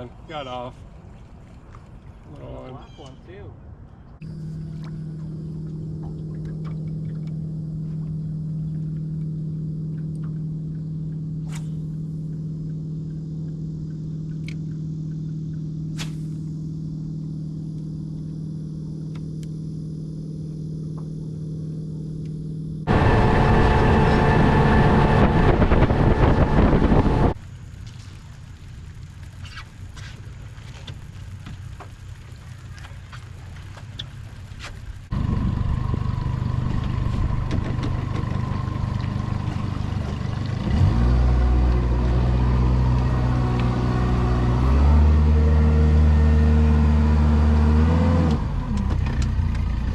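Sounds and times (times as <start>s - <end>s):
outboard motor humming: 4.1s - 49.9s
loud noisy rush: 22.9s - 27.4s.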